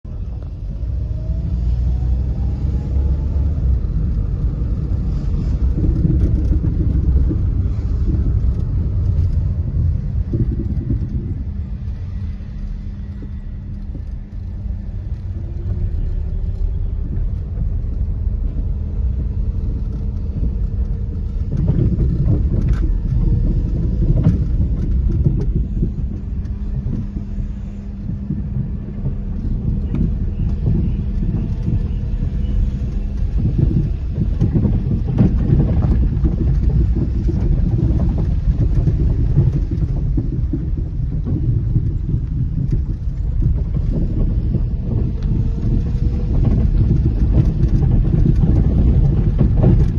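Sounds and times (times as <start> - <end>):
constant hum: 0.0 - 49.9
motor vehicle rumble: 0.0 - 49.9.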